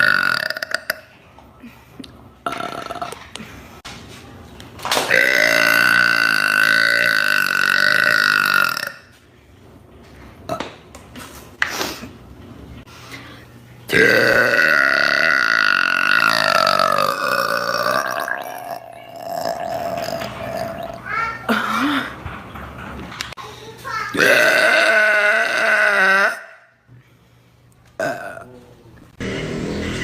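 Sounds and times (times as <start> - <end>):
woman burping: 0.0 - 1.1, 2.5 - 3.3, 5.1 - 9.0, 13.9 - 22.0, 24.2 - 26.6, 28.0 - 28.5.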